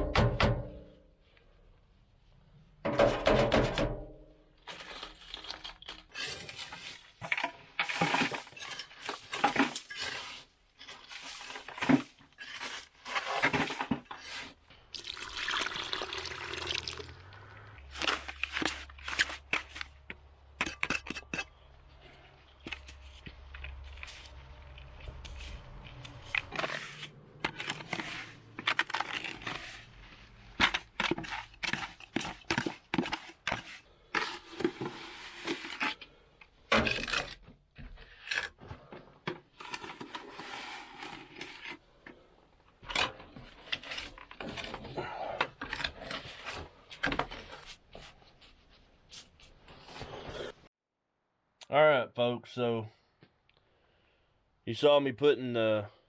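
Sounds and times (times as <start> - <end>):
wet mortar scraping and slopping: 6.2 - 36.3.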